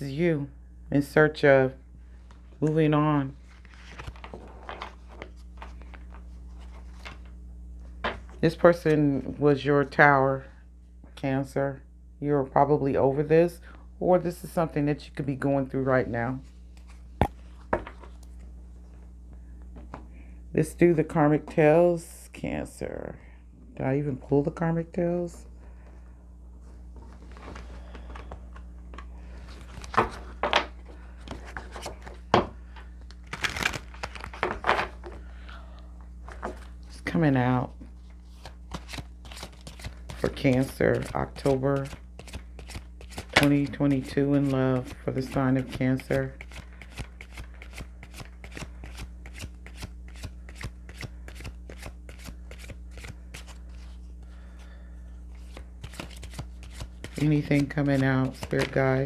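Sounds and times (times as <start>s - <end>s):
faint steady hum: 0.0s - 59.0s
cards slapping and riffling: 3.5s - 7.4s, 27.2s - 32.2s, 33.0s - 35.2s, 37.9s - 59.0s.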